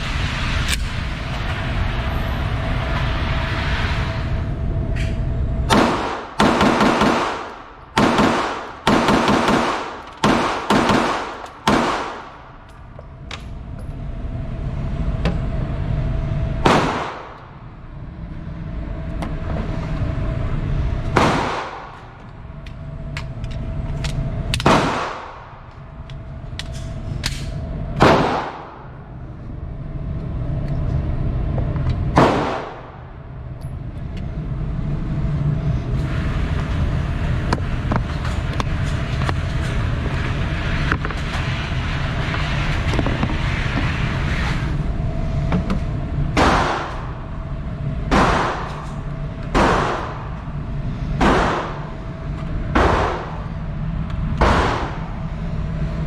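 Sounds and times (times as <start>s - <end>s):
faint hum: 0.0s - 56.0s
low rumble: 0.0s - 56.0s
gunshots: 5.7s - 12.4s, 16.6s - 17.4s, 21.1s - 22.0s, 24.6s - 25.5s, 28.0s - 28.9s, 32.2s - 33.0s, 46.4s - 47.1s, 48.1s - 48.8s, 49.5s - 50.3s, 51.2s - 51.9s, 52.7s - 53.5s, 54.4s - 55.1s.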